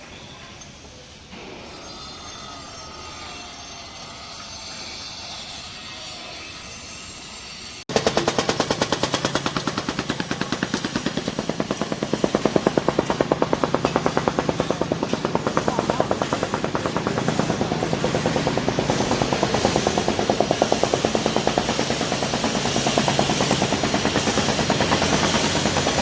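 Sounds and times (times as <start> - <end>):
power tool hammering rapidly: 7.9 - 26.0.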